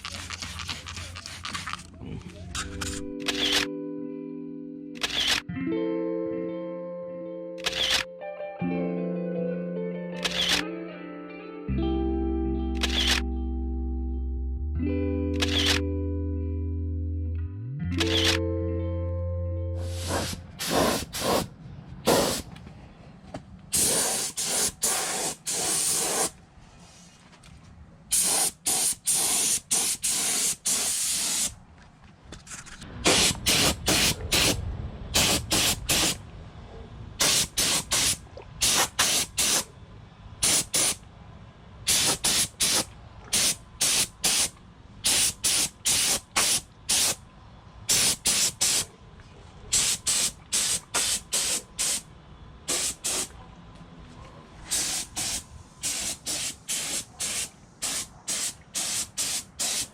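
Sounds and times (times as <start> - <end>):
spray paint hissing: 0.0 - 1.9, 19.8 - 21.5, 22.1 - 22.5, 23.7 - 26.4, 28.1 - 31.6, 33.0 - 36.2, 37.2 - 39.7, 40.4 - 41.0, 41.9 - 47.2, 47.9 - 48.8, 49.7 - 52.0, 52.7 - 53.3, 54.7 - 59.9.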